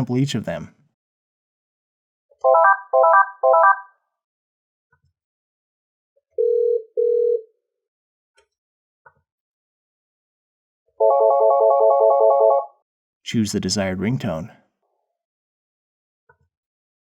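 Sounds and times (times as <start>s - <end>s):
electronic phone ringtone: 2.4s - 3.9s, 6.4s - 7.5s, 11.0s - 12.8s.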